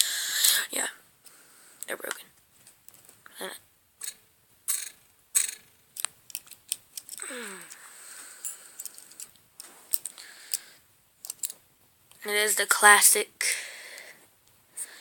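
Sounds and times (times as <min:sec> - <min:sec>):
soft rustling: 0:08.1 - 0:10.1.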